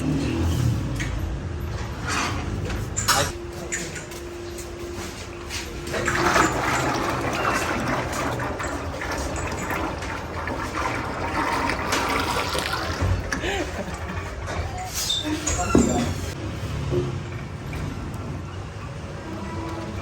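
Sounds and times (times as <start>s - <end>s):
water rushing and pouring: 5.9s - 14.5s.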